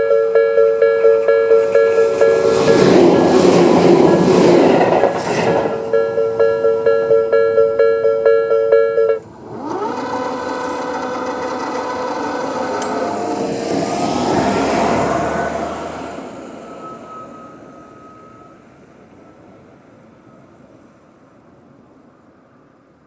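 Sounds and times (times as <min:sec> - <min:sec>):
level crossing alarm chime: 0:00.0 - 0:03.4, 0:05.7 - 0:09.2, 0:16.6 - 0:18.6
vehicle passing: 0:00.7 - 0:19.0.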